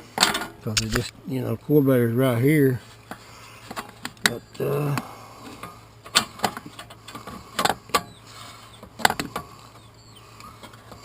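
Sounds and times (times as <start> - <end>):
sharp metallic clicks and knocks: 0.7 - 1.1.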